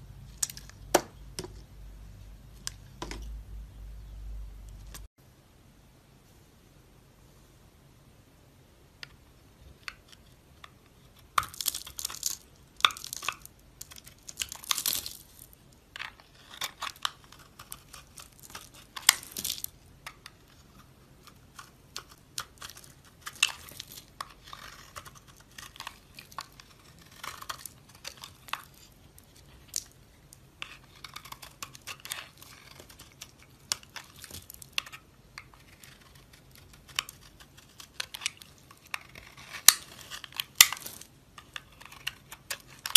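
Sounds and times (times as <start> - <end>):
knife cutting dry soap: 9.9 - 42.9.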